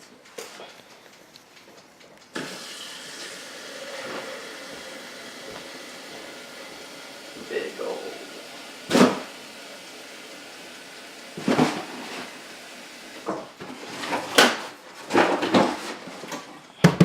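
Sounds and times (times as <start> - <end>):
objects knocking and clattering: 13.2 - 17.0.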